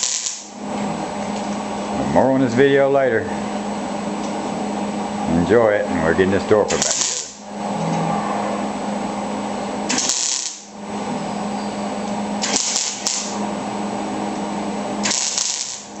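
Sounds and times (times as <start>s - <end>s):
arc welding crackle: 0.0s - 0.6s, 6.7s - 7.5s, 9.9s - 10.8s, 12.4s - 13.5s, 15.0s - 16.0s.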